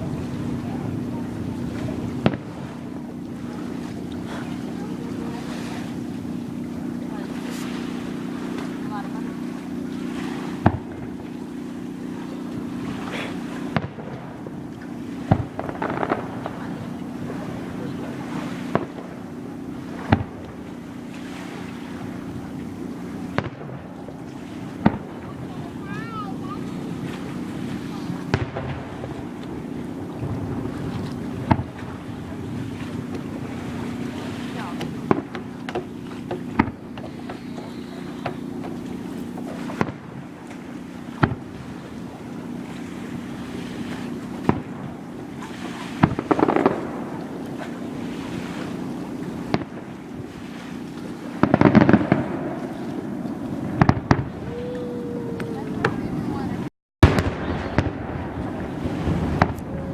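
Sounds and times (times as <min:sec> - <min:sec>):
fireworks booming: 0:00.0 - 0:59.9
steady low hum: 0:00.0 - 0:59.9
crackling firework pops: 0:01.8 - 0:02.6, 0:10.6 - 0:11.2, 0:13.6 - 0:17.0, 0:18.6 - 0:19.2, 0:20.0 - 0:20.6, 0:23.3 - 0:23.8, 0:24.8 - 0:25.2, 0:28.3 - 0:29.6, 0:30.2 - 0:32.0, 0:34.7 - 0:41.6, 0:44.2 - 0:45.0, 0:46.0 - 0:47.8, 0:49.5 - 0:49.9, 0:51.0 - 0:52.4, 0:53.8 - 0:54.3
wind noise: 0:51.6 - 0:59.9.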